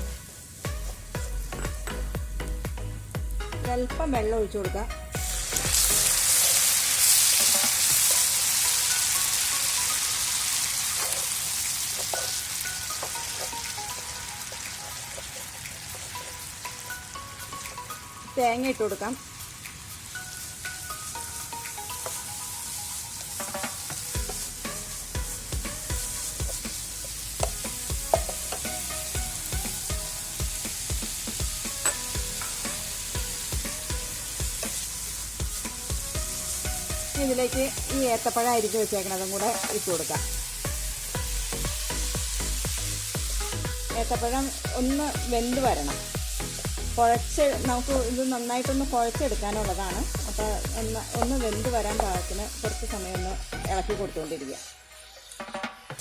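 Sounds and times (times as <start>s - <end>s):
background music with beat: 0.0s - 10.4s, 11.0s - 38.6s, 39.3s - 56.0s
water sizzling in hot pan: 0.0s - 56.0s
spoon scraping and knocking pan: 5.6s - 8.4s, 10.9s - 13.6s, 23.4s - 30.0s, 31.0s - 38.1s.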